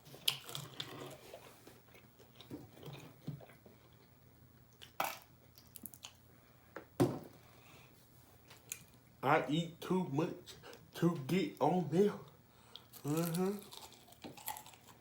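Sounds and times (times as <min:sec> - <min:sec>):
person chewing crunchy food: 0:00.0 - 0:04.1, 0:04.7 - 0:06.2, 0:12.7 - 0:15.0.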